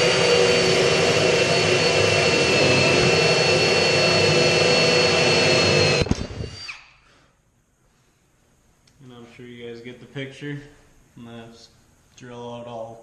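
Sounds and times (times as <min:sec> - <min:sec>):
power drill boring through metal: 0:00.0 - 0:06.9.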